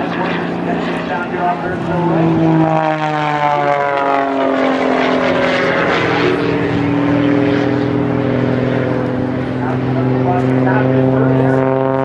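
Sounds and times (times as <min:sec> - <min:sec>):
propeller airplane engine: 0:00.0 - 0:12.0.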